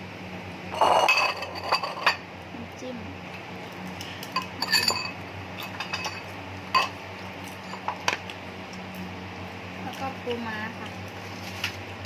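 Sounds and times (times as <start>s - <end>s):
steady low hum: 0.0s - 12.0s
tableware clinking: 0.8s - 2.2s, 4.4s - 6.9s.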